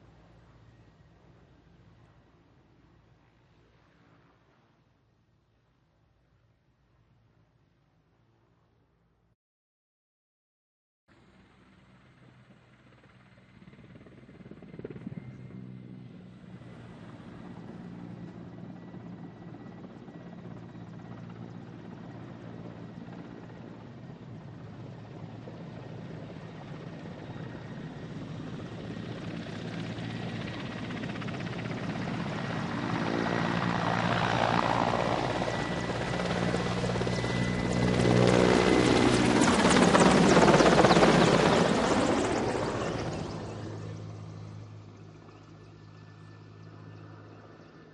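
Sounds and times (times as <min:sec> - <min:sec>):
helicopter turbine whine: 0:11.2 - 0:47.9
helicopter rotor beat: 0:11.4 - 0:47.9.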